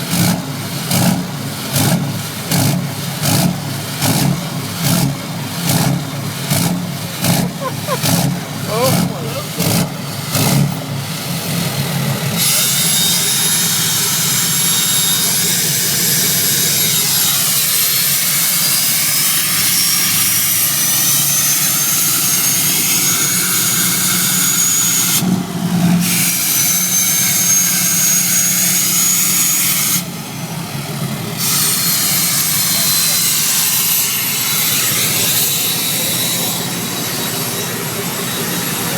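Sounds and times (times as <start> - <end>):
truck engine running: 0.0 - 26.0
turbocharger whistling: 11.9 - 25.2, 26.2 - 29.7.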